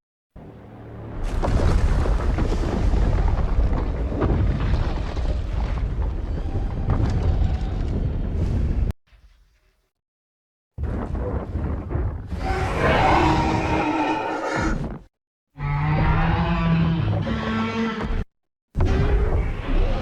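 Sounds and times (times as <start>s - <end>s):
deep explosion sound effect: 1.2s - 8.9s.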